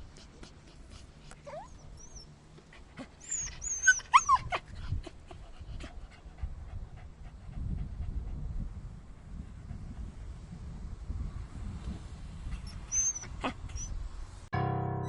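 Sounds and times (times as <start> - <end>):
dog yelping and whimpering: 1.4 - 2.3, 3.0 - 5.4, 12.6 - 14.0.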